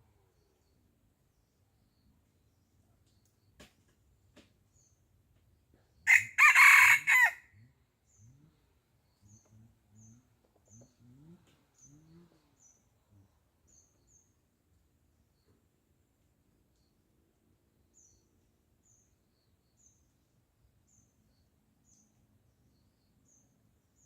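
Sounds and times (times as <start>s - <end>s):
rooster crowing: 6.1s - 7.4s.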